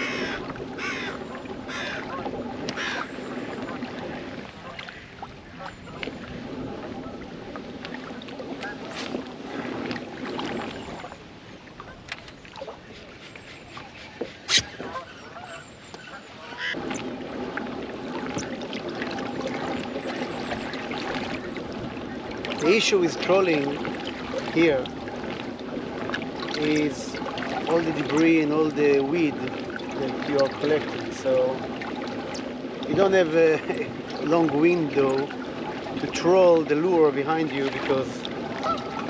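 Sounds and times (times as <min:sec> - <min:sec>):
crow cawing: 0:00.0 - 0:02.0, 0:02.8 - 0:03.1
water noise from kayak: 0:00.0 - 0:39.0.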